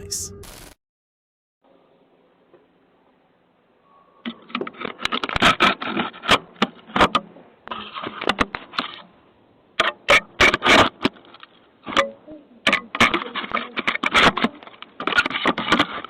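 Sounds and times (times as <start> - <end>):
knocks clatters and scrapes: 4.3 - 9.1, 9.8 - 16.0.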